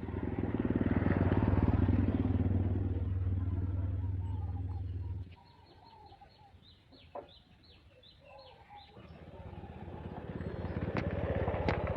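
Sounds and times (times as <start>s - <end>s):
engine hum: 0.0s - 5.4s, 9.0s - 11.9s
bird chirping: 3.9s - 11.2s.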